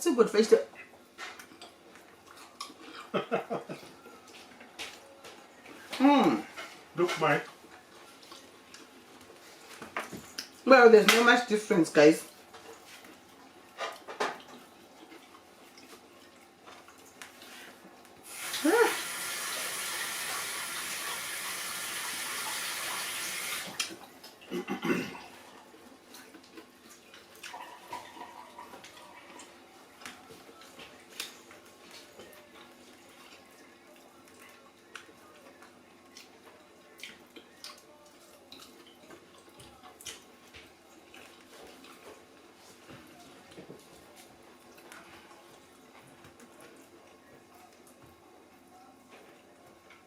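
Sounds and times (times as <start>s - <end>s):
faint eating sounds: 0.5s - 50.0s
water tap running: 18.2s - 23.9s.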